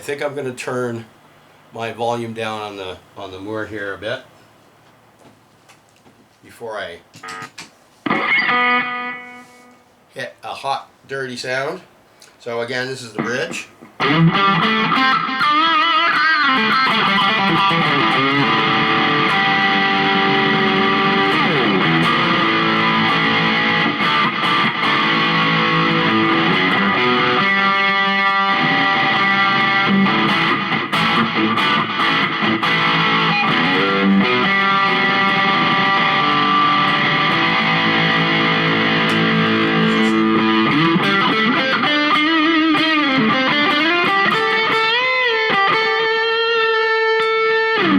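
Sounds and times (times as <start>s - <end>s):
overdriven electric guitar: 7.2s - 9.9s, 13.8s - 47.9s.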